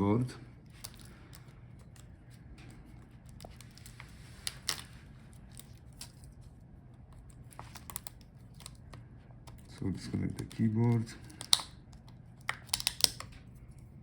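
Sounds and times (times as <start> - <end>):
low steady hum: 0.0 - 14.0
small clicks and taps: 7.1 - 13.4.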